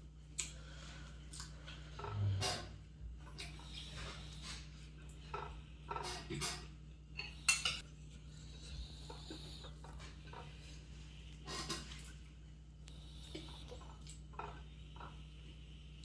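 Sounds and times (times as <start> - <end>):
faint steady hum: 0.0 - 16.0
cutlery clinking on a plate: 6.0 - 7.8.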